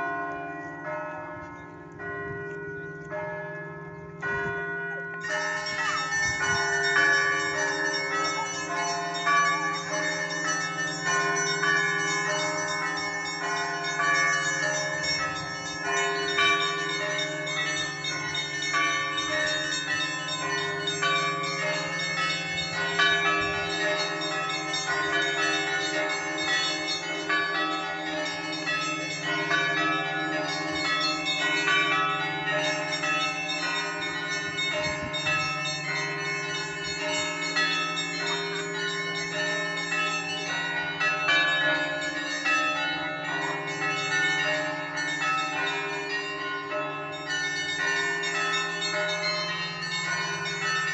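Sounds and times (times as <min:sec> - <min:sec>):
large bell humming: 0:00.0 - 0:50.9.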